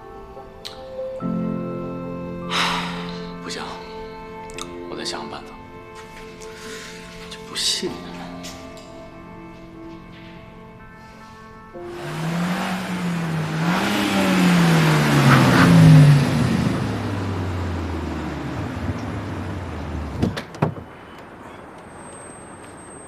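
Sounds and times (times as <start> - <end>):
car engine revving past: 11.8 - 20.3.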